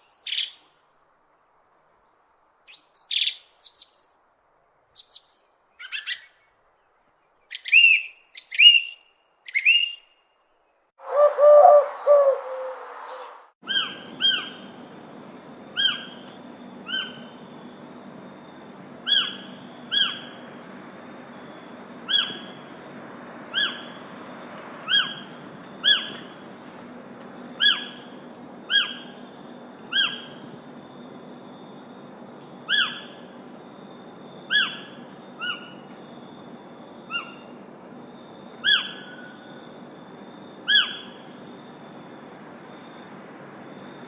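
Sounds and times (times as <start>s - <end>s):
bird calling: 11.0s - 14.7s, 15.7s - 17.4s, 19.0s - 20.5s, 22.0s - 22.7s, 29.9s - 30.4s, 32.7s - 33.3s, 34.5s - 35.9s, 37.1s - 37.6s, 38.6s - 39.6s, 40.6s - 41.4s.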